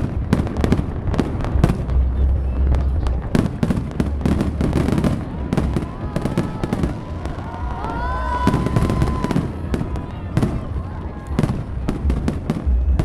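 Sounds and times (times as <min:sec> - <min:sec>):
continuous low rumble: 0:00.0 - 0:13.0.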